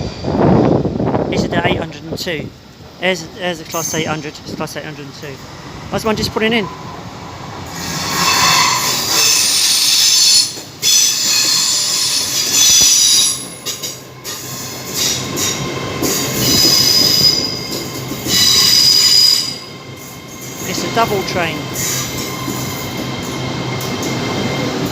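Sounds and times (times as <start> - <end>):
rumble of moving train: 0.0 - 24.9
train wheels squealing: 3.7 - 4.3, 7.7 - 24.9.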